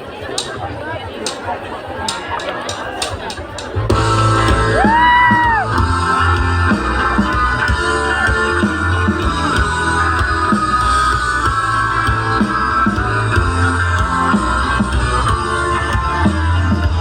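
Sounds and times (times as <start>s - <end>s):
loud rock music: 3.7s - 17.0s.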